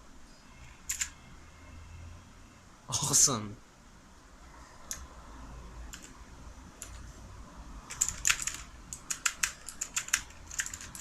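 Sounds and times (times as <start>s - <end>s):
mechanical keyboard clicking: 0.9s - 1.1s, 5.9s - 6.2s, 7.9s - 11.0s.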